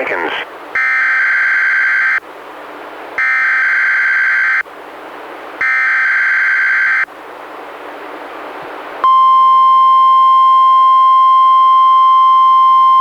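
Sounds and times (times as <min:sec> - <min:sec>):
steady radio hiss: 0:00.0 - 0:00.8.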